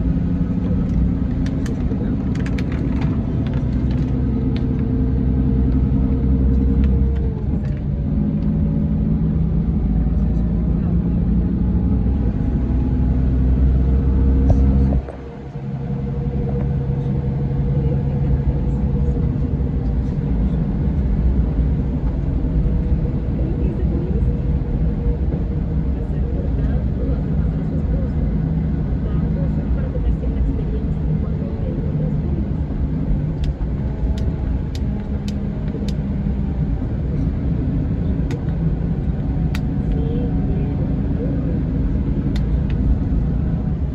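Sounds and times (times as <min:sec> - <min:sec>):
diesel engine rumbling: 0:00.0 - 0:43.9.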